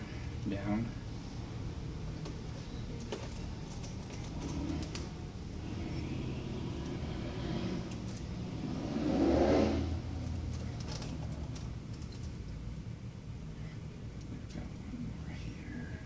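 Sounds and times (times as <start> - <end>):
steady low hum: 0.0 - 16.0
engine-like sound: 4.3 - 11.7.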